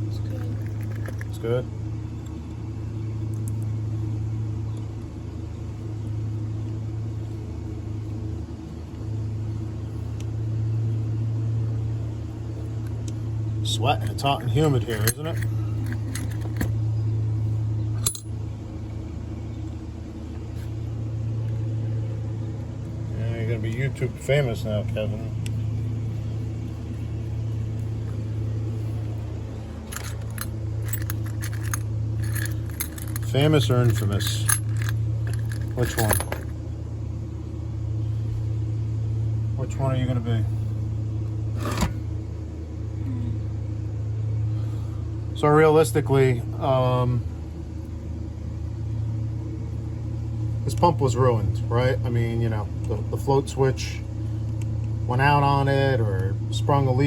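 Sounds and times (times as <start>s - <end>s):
low machine hum: 0.0s - 57.0s
metal parts clinking: 0.2s - 1.4s, 14.0s - 16.7s, 18.0s - 18.3s, 29.8s - 36.5s.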